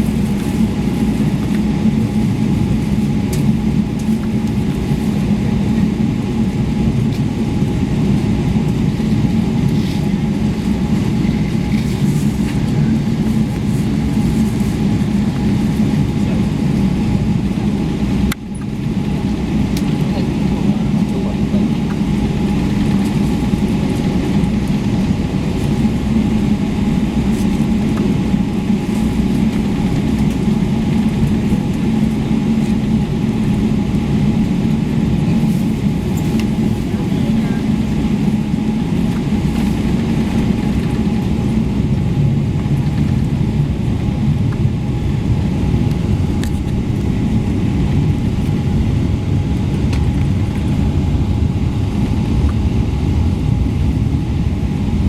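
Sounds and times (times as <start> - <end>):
low cabin drone of jet engines: 0.0 - 55.0.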